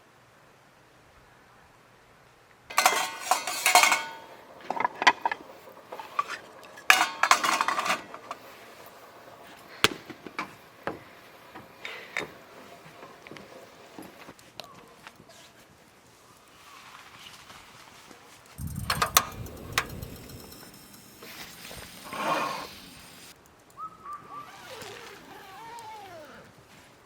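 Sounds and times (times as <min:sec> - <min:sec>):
dishes and cutlery clattering: 0:02.7 - 0:08.9.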